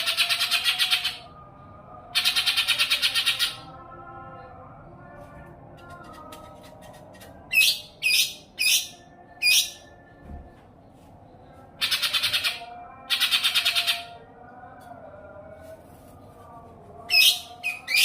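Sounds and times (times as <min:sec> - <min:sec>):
songbird chirps and trills: 0:05.8 - 0:14.4, 0:17.0 - 0:18.0.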